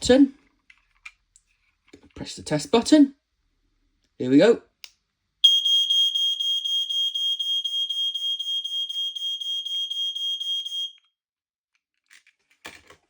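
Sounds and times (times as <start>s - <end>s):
smoke alarm rippling tone: 5.4s - 11.0s.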